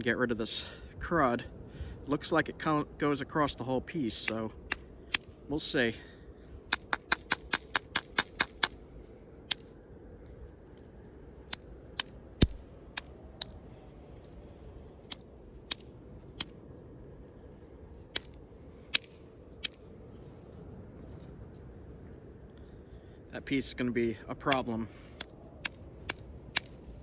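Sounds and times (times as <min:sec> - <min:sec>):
stone knapping strikes: 0:06.7 - 0:08.8.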